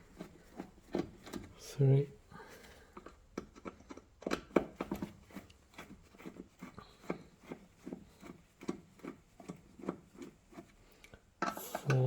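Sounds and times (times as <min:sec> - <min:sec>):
screwdriver clicking and scraping: 0:03.0 - 0:10.6.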